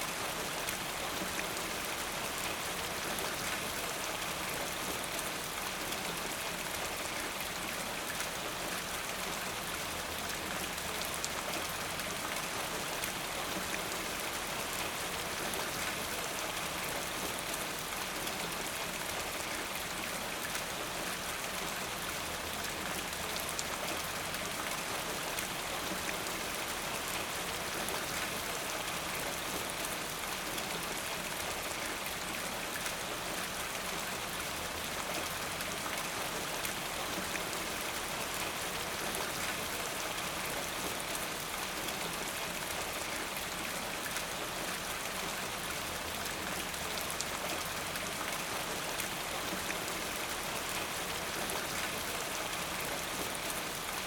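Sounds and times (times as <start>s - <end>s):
steady rainfall: 0.0s - 54.0s.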